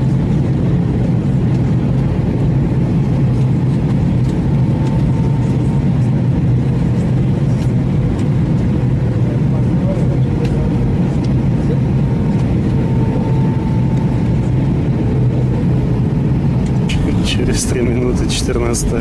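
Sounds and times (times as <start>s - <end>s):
jet engine rumble and rushing air: 0.0s - 19.0s.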